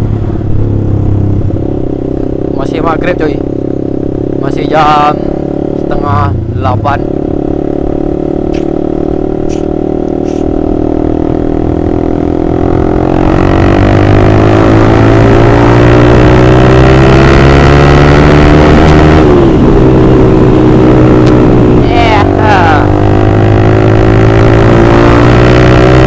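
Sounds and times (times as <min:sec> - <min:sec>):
motorcycle engine accelerating: 0:00.0 - 0:26.0.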